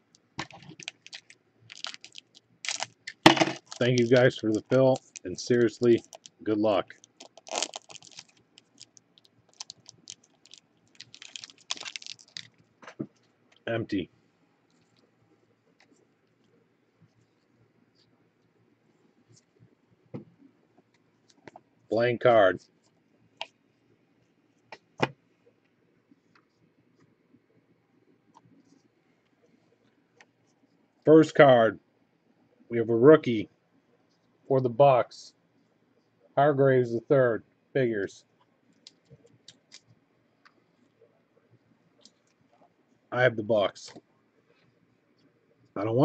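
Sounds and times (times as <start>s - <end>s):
cards and wrapping clicking and rustling: 0.4s - 13.2s.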